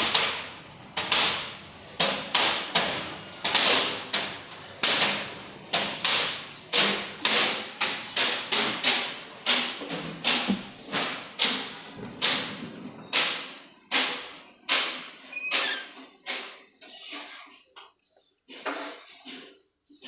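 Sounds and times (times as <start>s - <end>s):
loud ringing bangs: 4.7s - 15.2s.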